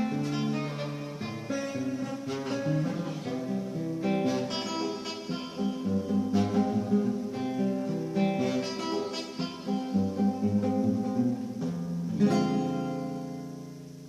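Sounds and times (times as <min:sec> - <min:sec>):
acoustic guitar music: 0:00.0 - 0:14.0.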